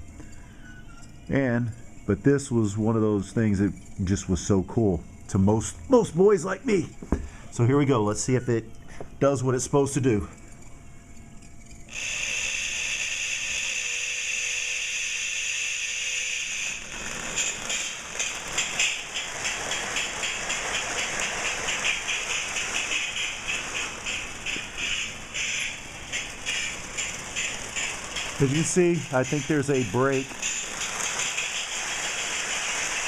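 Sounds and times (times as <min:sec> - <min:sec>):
toy train clicking on track: 0:11.9 - 0:33.0.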